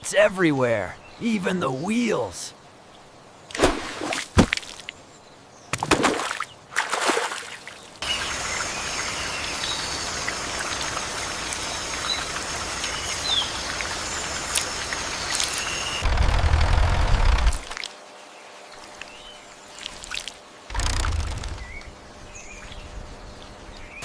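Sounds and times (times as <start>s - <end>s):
running water: 6.2s - 16.0s.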